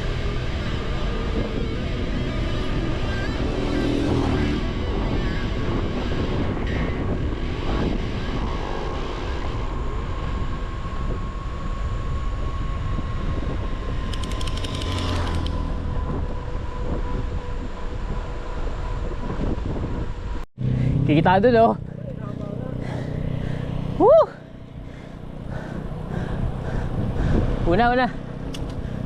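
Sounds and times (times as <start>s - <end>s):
road rumble: 0.0s - 29.0s
wind buffeting: 0.0s - 29.0s
rapid ticking: 14.1s - 15.6s.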